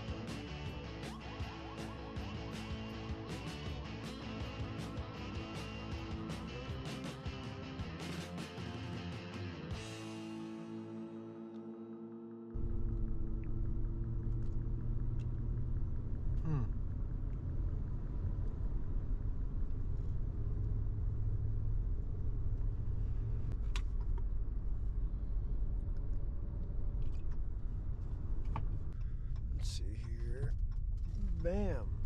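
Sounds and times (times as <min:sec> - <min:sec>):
vehicle engine and road noise: 0:00.0 - 0:32.0.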